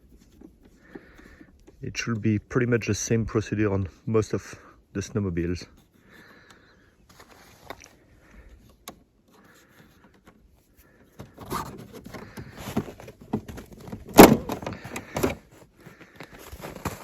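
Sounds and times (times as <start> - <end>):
plastic panel rattling: 11.1 - 17.0.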